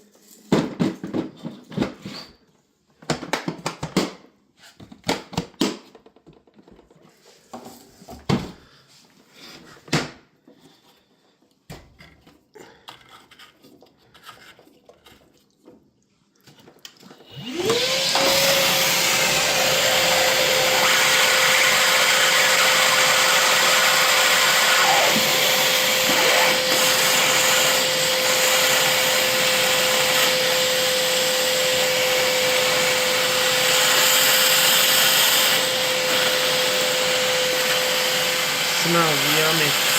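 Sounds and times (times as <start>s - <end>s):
vacuum motor whining: 17.2s - 39.9s.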